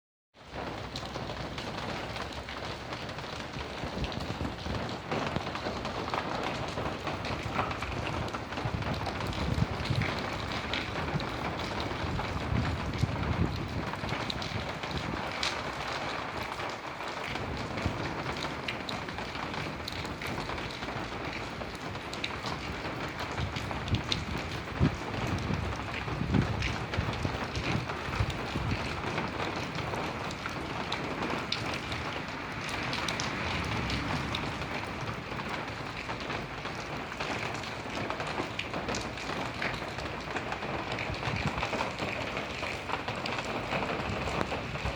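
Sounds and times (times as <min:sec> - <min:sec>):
steady rain falling: 0:00.4 - 0:44.9.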